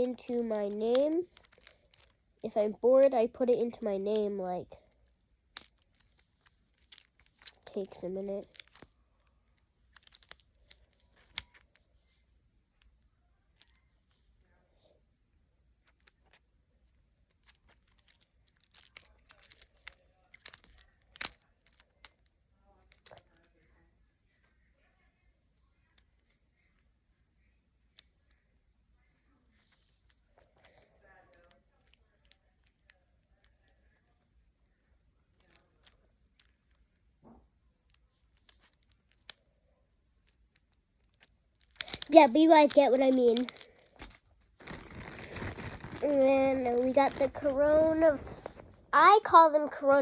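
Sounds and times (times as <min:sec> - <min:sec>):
plastic fidget toys clicking: 0:00.0 - 0:06.0, 0:41.1 - 0:49.2.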